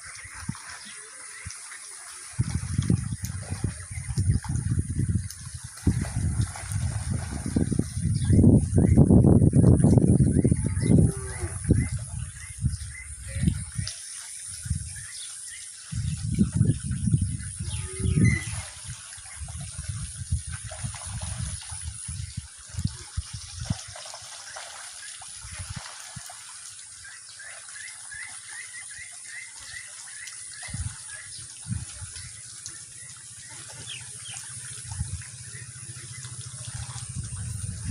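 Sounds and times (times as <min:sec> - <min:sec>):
splashing gushing water: 0:00.0 - 0:37.9
low rumbling thumps: 0:36.6 - 0:37.9.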